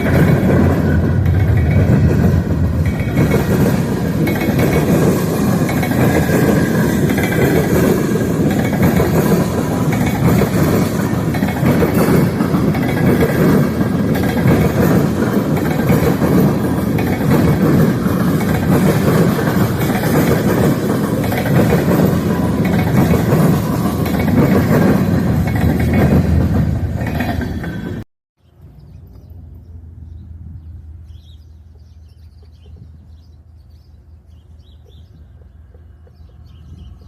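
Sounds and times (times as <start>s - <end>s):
freight train rumbling past: 0.0s - 28.0s, 28.6s - 37.0s.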